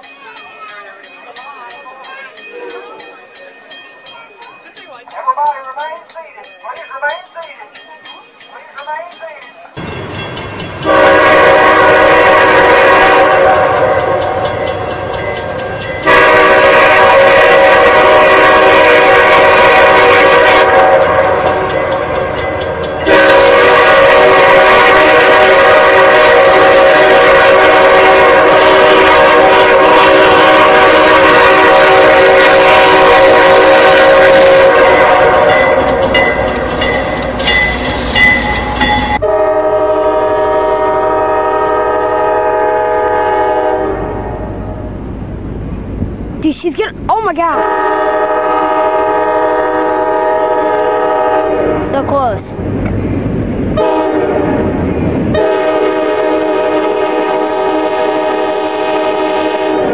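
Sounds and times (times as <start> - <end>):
locomotive air horn blasts: 10.8 - 14.4, 16.0 - 21.7, 23.0 - 36.0, 39.2 - 44.5, 47.6 - 51.9, 53.8 - 54.6, 55.4 - 59.9.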